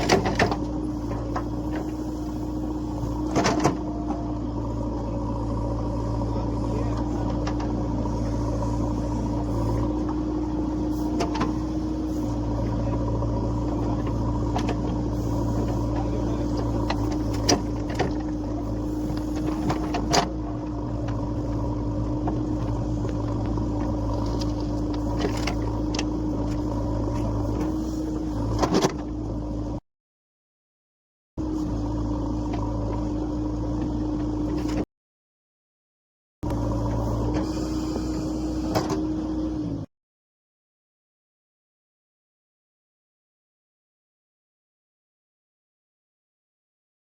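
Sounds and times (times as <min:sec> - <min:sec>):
heavy diesel engine running: 0:00.0 - 0:29.8, 0:31.4 - 0:34.8, 0:36.4 - 0:39.9.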